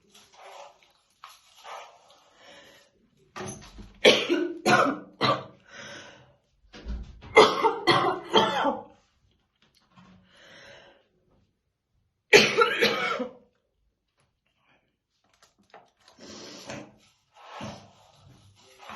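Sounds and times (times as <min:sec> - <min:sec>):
woman coughing: 0:04.0 - 0:05.6, 0:07.4 - 0:08.9, 0:12.3 - 0:13.4
woman breathing: 0:05.7 - 0:06.4, 0:10.2 - 0:11.1.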